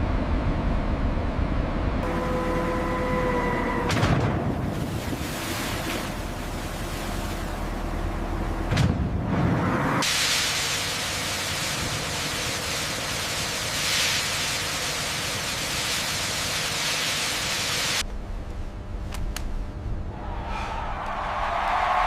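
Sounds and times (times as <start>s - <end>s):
low rumble: 18.0s - 22.0s.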